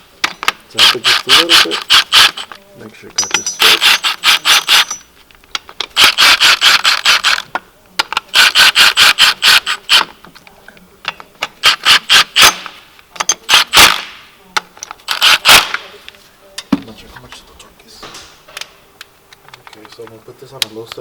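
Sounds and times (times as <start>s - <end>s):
ratchet wrench clicking: 0.8s - 2.5s, 3.2s - 5.1s.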